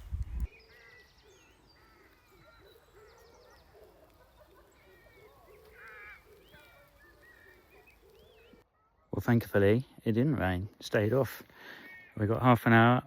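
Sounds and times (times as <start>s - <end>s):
small birds chirping: 0.0s - 9.8s
low wavering bird calls: 0.4s - 9.1s.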